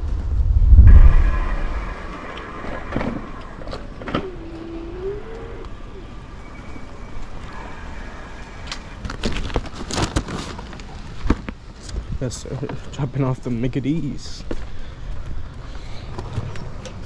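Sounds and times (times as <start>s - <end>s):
wavering squeal: 0.4s - 9.0s.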